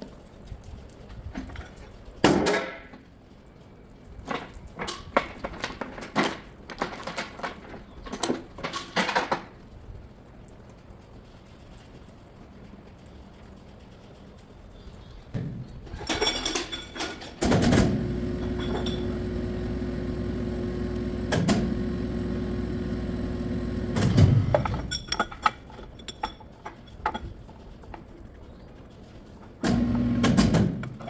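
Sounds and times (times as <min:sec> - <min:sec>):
knocks and clatter: 0:15.4 - 0:31.0
machine motor humming: 0:17.5 - 0:25.0, 0:29.6 - 0:31.0.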